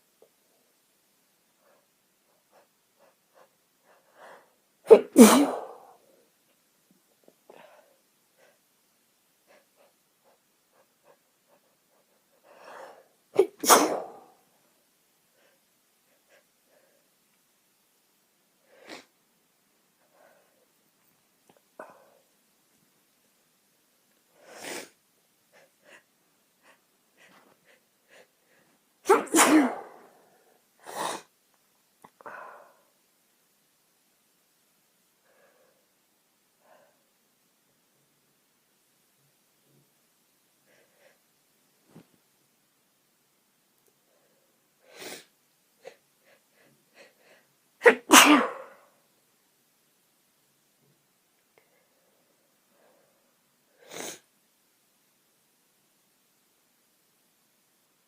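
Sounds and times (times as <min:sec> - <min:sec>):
woman sneezing: 0:04.9 - 0:05.9, 0:13.4 - 0:14.3, 0:29.0 - 0:30.1, 0:47.8 - 0:48.9.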